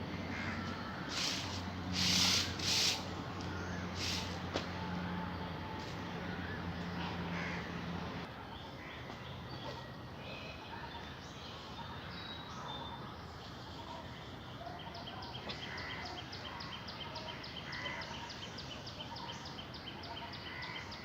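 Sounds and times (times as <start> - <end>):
outdoor background noise: 0.0 - 21.0
birds calling: 0.2 - 4.5.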